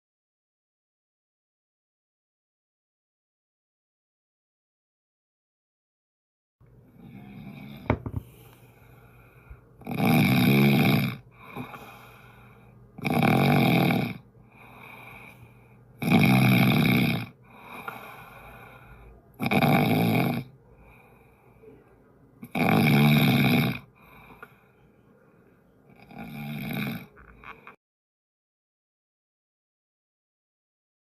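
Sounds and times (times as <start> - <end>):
person snoring: 6.9 - 21.5, 22.4 - 24.7, 25.9 - 27.7.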